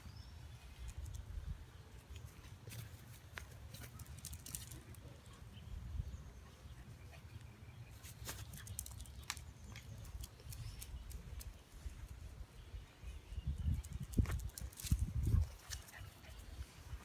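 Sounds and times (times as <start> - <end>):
paws and claws pattering: 13.8 - 16.6.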